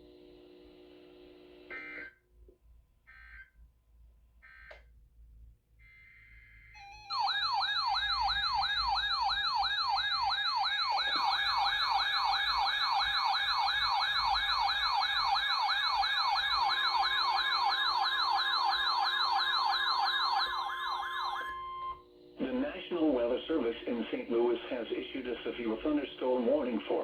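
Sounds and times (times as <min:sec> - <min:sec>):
electronic yelp siren: 0:05.8 - 0:22.0.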